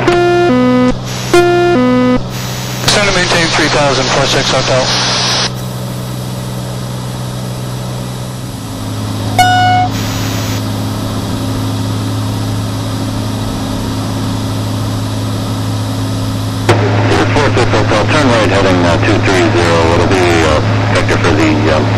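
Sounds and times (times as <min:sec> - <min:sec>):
loud electronic beep: 0:00.0 - 0:02.2, 0:09.3 - 0:10.6
aircraft engine and propeller: 0:02.2 - 0:21.9.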